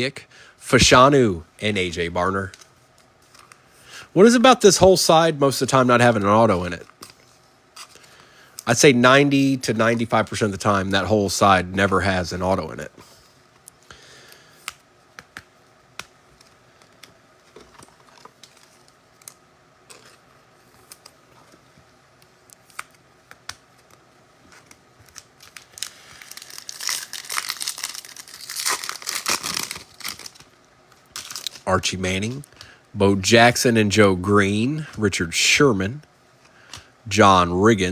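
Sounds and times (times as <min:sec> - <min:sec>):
foil wrapper tearing and crinkling: 0:25.0 - 0:31.7.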